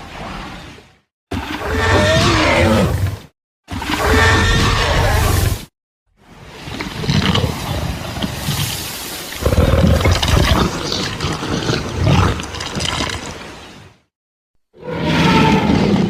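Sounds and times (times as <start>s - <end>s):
dinosaur roaring: 9.4s - 10.8s.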